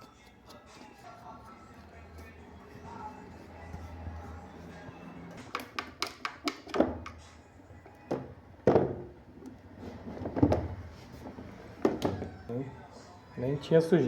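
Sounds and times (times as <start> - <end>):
sharp taps on fan parts: 5.4 - 7.2.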